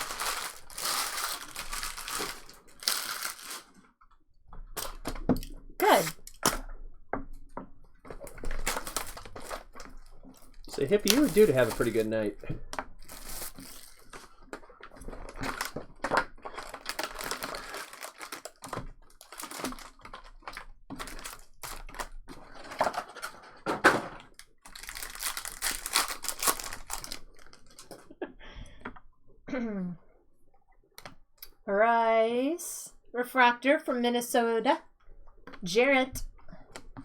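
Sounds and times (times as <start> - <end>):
wrappers tearing and crinkling: 0.0 - 3.9, 8.3 - 12.2, 13.0 - 14.4, 15.0 - 23.4, 24.2 - 28.0.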